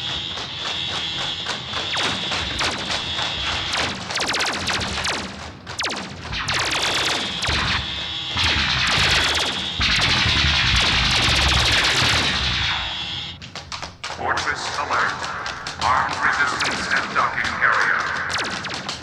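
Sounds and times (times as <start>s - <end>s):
high alarm tone: 0.0s - 13.4s, 14.1s - 19.0s
laser gun blasts: 0.0s - 13.4s, 14.2s - 19.0s
crashes: 14.0s - 19.0s.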